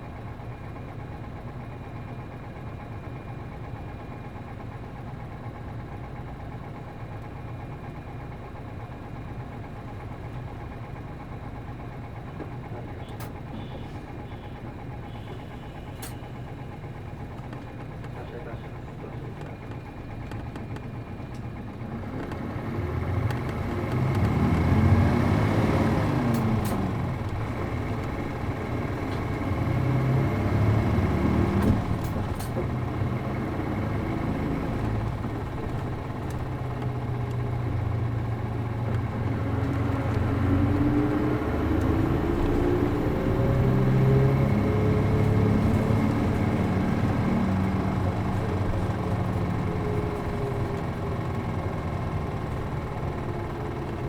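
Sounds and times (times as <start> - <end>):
bus diesel engine accelerating: 0.0 - 54.0.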